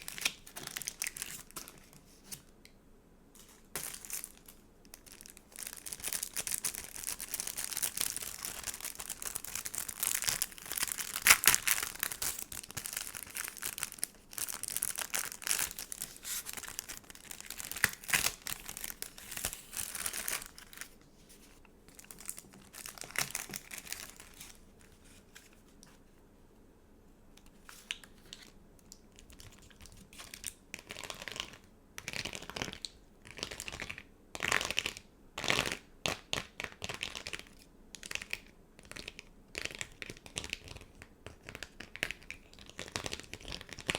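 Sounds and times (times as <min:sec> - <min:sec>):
sticker packaging crinkling: 0:00.0 - 0:02.4, 0:03.4 - 0:25.5, 0:36.6 - 0:43.9.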